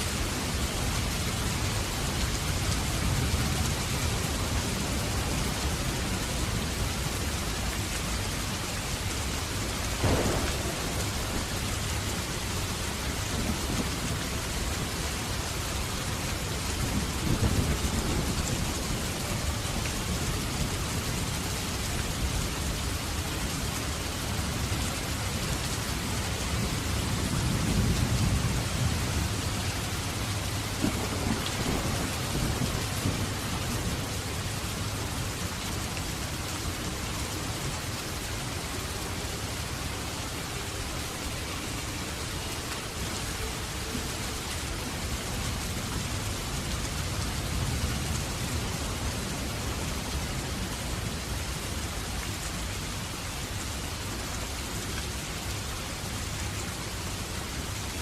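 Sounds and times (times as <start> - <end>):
heavy rain falling: 0.0 - 58.0
thunder cracking and rumbling: 9.9 - 15.2, 16.4 - 19.7, 27.1 - 34.9.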